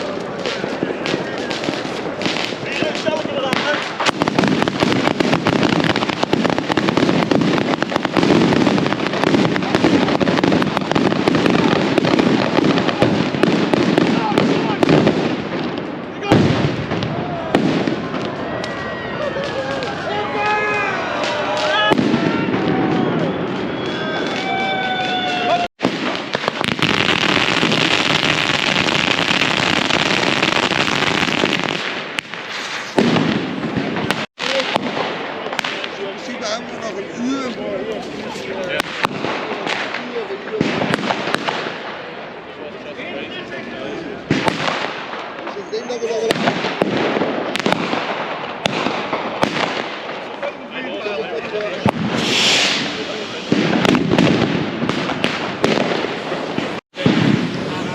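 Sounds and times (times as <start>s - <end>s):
firecrackers banging: 0.0s - 57.9s
loud bang: 51.9s - 57.9s.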